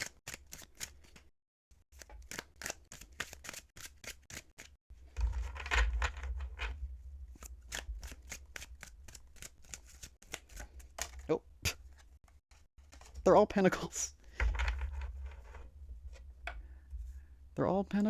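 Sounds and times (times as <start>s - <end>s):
cards being shuffled: 0.0s - 1.3s, 2.0s - 4.7s, 7.3s - 13.2s.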